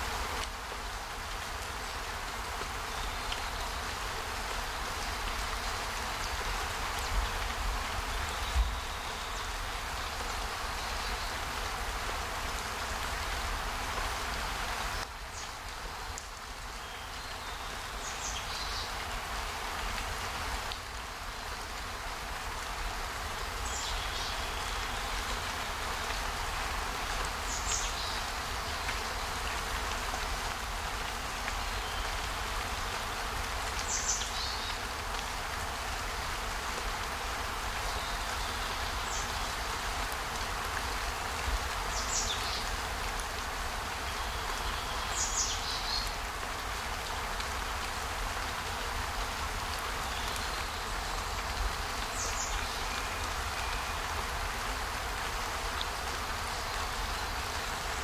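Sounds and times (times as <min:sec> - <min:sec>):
rain or running water rushing: 0:00.0 - 0:58.0.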